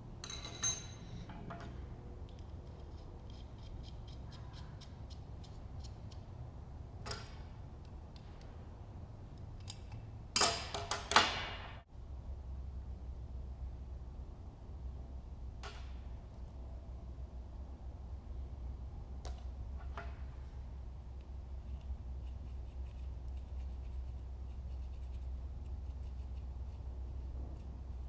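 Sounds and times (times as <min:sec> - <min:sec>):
low steady hum: 0:00.0 - 0:28.0
metal parts clinking and clicking: 0:00.2 - 0:04.1, 0:09.4 - 0:11.3.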